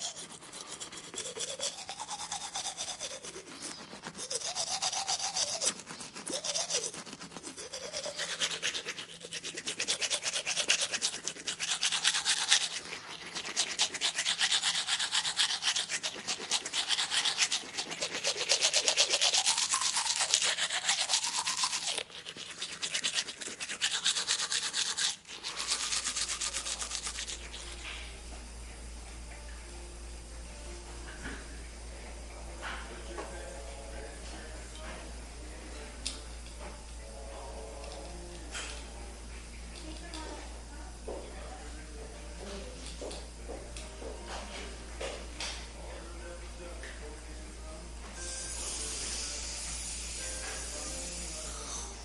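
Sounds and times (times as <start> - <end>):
fast scrubbing rasping noise: 0.0 - 27.9
steady low hum: 25.4 - 52.0.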